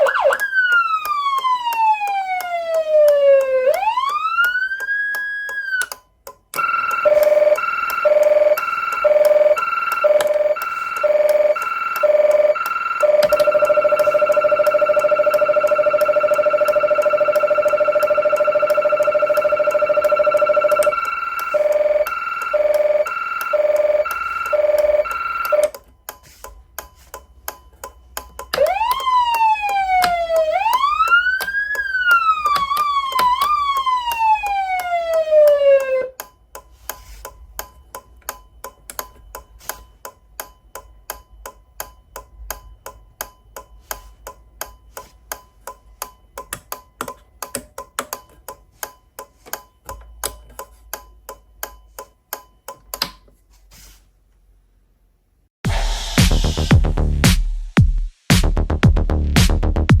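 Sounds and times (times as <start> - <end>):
siren rising and falling: 0.0 - 6.0, 6.6 - 25.8, 28.5 - 36.2.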